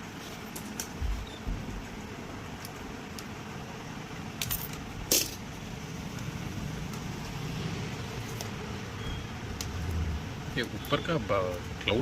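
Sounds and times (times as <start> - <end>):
low background hum: 0.0 - 12.0.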